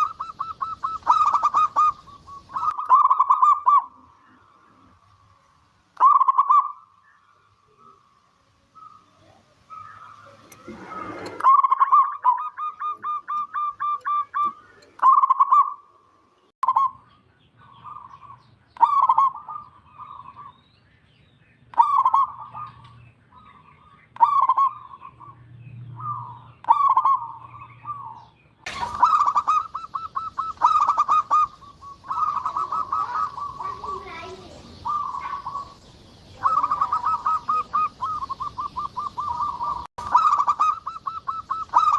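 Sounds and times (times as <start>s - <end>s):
dove cooing: 0.0s - 5.0s, 8.7s - 15.8s, 21.8s - 25.4s, 26.0s - 41.9s.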